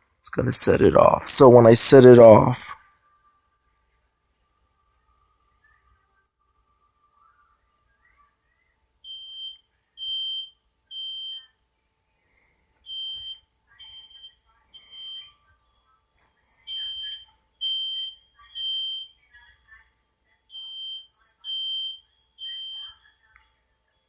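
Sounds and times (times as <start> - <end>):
smoke alarm beeping: 9.0 - 11.6, 12.8 - 15.4, 16.6 - 19.2, 20.5 - 23.1.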